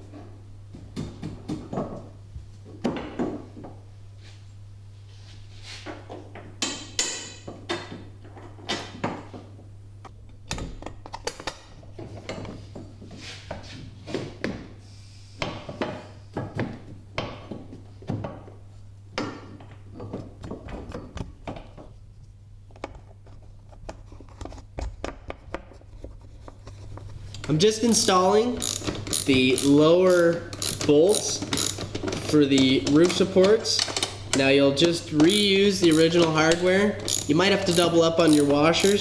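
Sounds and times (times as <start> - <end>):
metal parts and tools clinking: 27.4 - 39.0.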